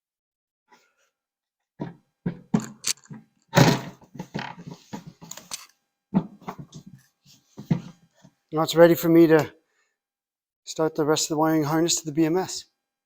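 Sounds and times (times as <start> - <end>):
knocks and clunks of a part: 1.8 - 5.5, 6.2 - 7.0, 7.6 - 8.4.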